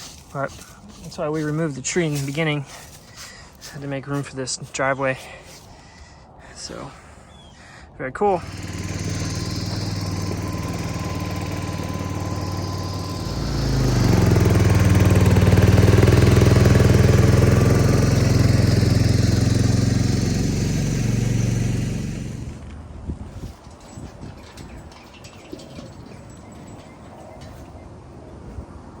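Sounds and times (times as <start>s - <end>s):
chainsaw engine: 0.0s - 5.8s, 8.3s - 22.7s.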